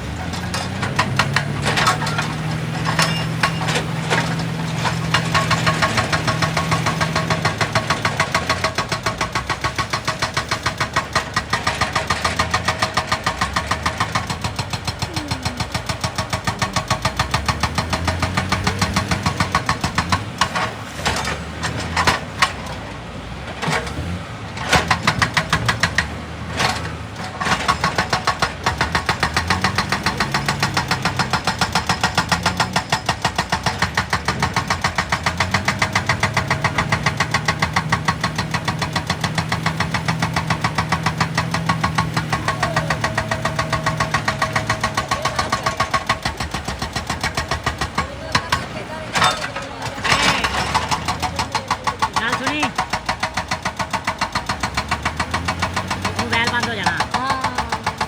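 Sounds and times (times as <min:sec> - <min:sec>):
diesel engine running: 0:00.0 - 0:58.0
rapid even hammering: 0:00.0 - 0:58.0.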